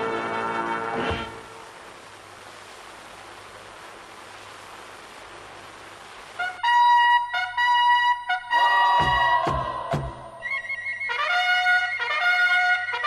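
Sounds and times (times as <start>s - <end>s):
trumpet-led brass music: 0.0s - 1.6s, 6.4s - 13.0s.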